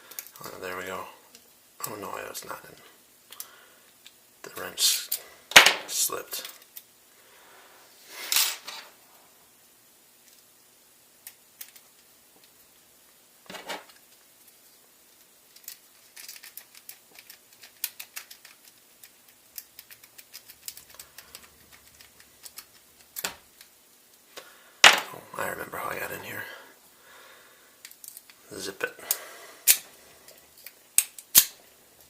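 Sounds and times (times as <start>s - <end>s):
lock pick clicking and scratching: 15.5s - 23.3s.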